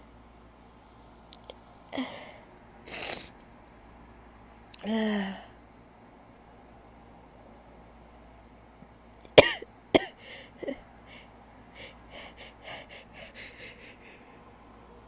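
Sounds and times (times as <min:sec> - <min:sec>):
woman coughing sharply: 0:09.4 - 0:10.8
short quick breaths: 0:10.2 - 0:14.5.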